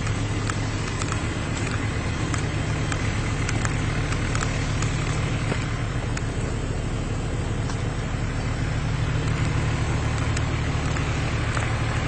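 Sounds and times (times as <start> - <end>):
faint light ticks: 0.0 - 6.3, 9.2 - 11.8
vehicle engine idling: 0.0 - 12.0.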